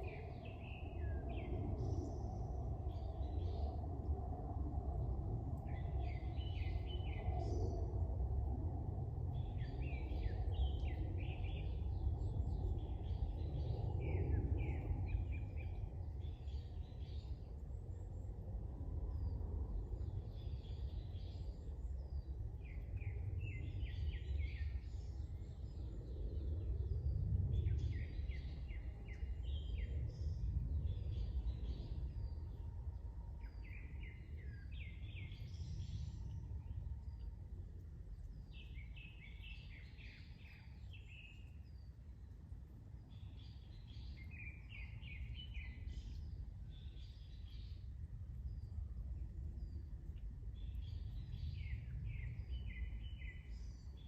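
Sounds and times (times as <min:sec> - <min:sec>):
small birds chirping: 0:38.0 - 0:54.0.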